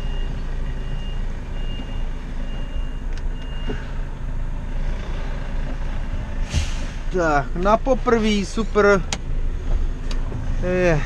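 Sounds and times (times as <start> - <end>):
truck reversing alarm beeps: 0.0 - 4.0
diesel engine running: 0.0 - 11.0.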